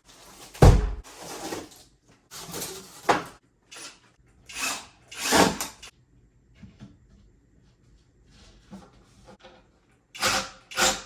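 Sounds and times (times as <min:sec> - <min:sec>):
furniture parts scraping and rustling: 0:00.0 - 0:03.4.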